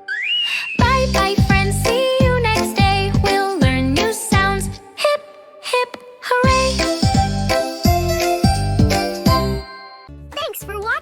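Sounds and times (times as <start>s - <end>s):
instrumental children's song: 0.0s - 11.0s.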